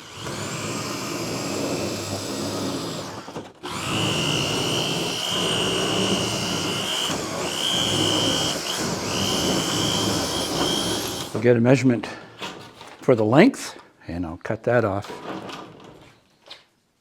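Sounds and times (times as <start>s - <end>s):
electric shears whining: 0.0s - 11.4s.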